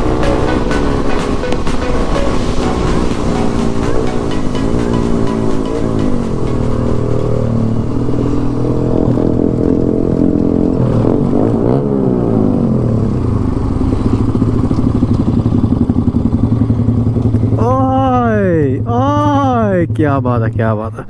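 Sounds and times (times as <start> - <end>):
motorcycle engine revving: 6.7 - 17.6.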